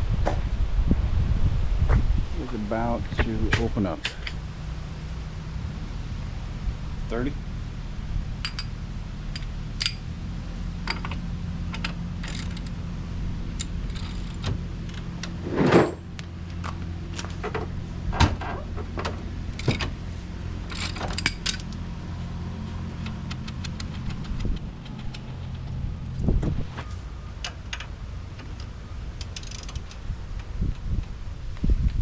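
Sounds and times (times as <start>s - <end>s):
engine idling: 3.6s - 32.0s
clicks and rattles: 10.8s - 12.8s, 23.0s - 26.3s, 27.4s - 31.2s
scraping clatter: 13.6s - 16.2s.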